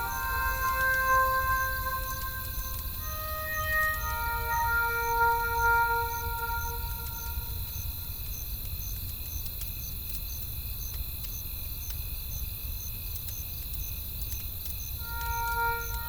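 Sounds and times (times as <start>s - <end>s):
low wind rumble: 0.0s - 9.3s
crickets chirping: 0.0s - 16.0s.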